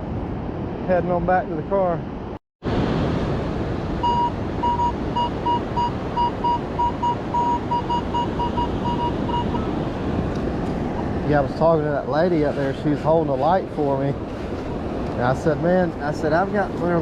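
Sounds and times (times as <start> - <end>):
wind noise: 0.0 - 17.0
surf: 2.7 - 17.0
metal detector beeping: 4.0 - 9.7.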